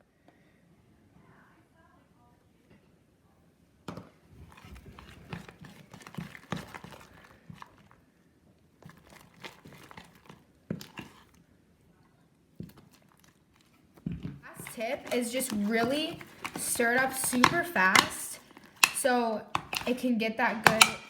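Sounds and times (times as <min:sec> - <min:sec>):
spoon stirring wet slime: 0:04.4 - 0:08.1, 0:08.8 - 0:11.5, 0:12.6 - 0:21.0.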